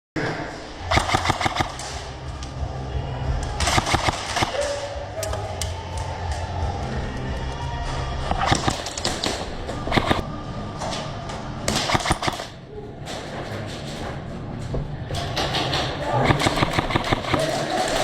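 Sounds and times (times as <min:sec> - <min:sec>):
airsoft guns firing: 0:00.9 - 0:02.1, 0:03.6 - 0:05.4, 0:08.4 - 0:10.2, 0:11.7 - 0:12.6, 0:15.5 - 0:18.0.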